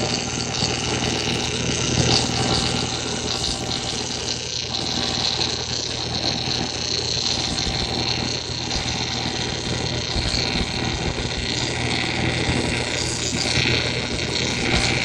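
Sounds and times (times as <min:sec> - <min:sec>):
steady electrical hum: 0:00.0 - 0:15.0
welding arc crackling sizzle: 0:00.0 - 0:15.0.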